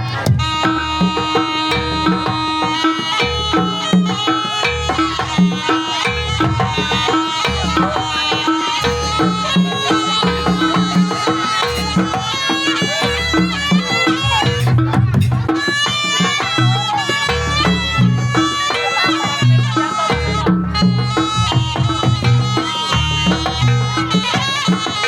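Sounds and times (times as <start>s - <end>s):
hand-drum strokes: 0.0s - 25.0s
reedy melody line: 0.0s - 25.0s
ringing pitched percussion: 0.0s - 25.0s.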